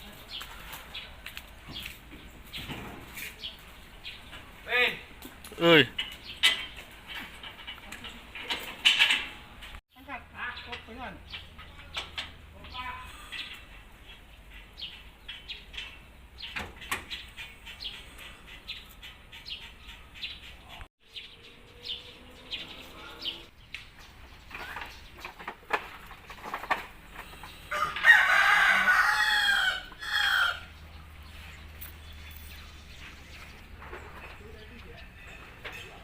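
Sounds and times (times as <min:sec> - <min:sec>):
rooster crowing: 0:27.7 - 0:30.7.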